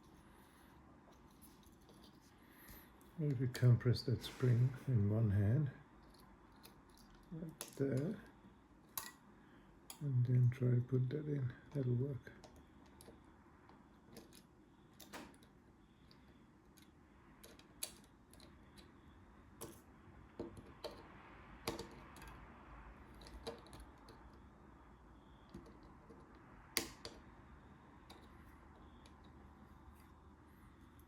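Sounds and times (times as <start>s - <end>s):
small plastic and metal clicks: 16.1s - 18.9s.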